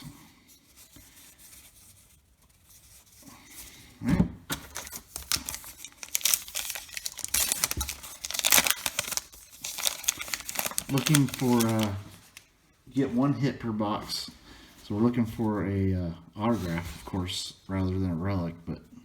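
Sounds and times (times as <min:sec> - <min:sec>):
wrapper tearing and crinkling: 0:04.6 - 0:12.4.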